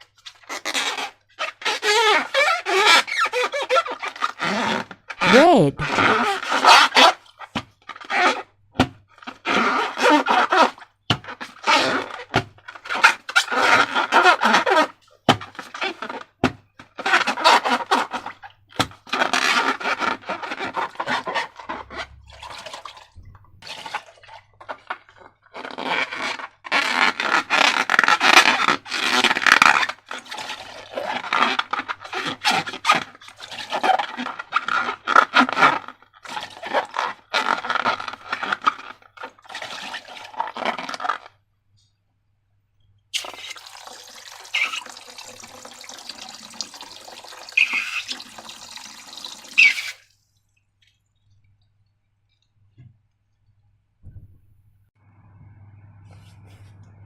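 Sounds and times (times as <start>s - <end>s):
slime squelching: 43.2s - 51.4s.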